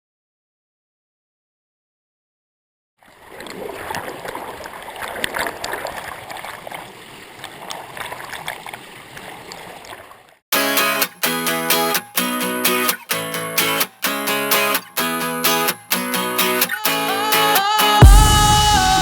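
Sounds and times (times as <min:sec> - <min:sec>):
kayak paddling: 0:03.0 - 0:10.4.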